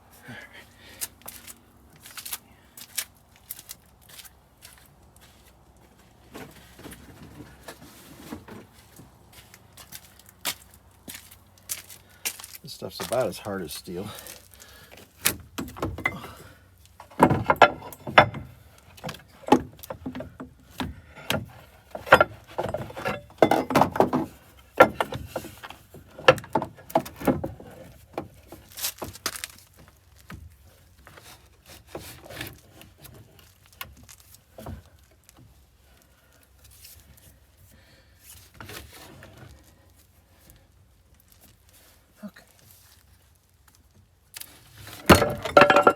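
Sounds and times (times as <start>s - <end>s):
metal tools clicking and clanking: 17.0s - 19.5s, 21.9s - 24.1s, 45.1s - 45.9s.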